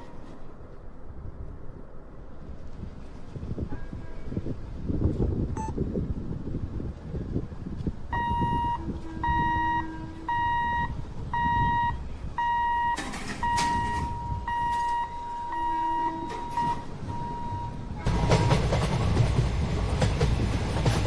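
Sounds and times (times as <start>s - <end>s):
lower electronic tone: 8.1s - 17.8s
high electronic warning beeps: 8.2s - 17.8s.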